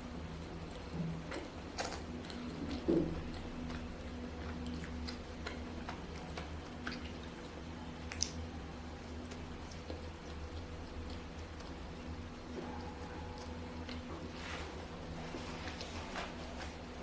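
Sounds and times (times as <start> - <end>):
soft chewing: 0.0 - 17.0
steady low hum: 0.0 - 17.0
small mouth clicks: 8.0 - 8.4.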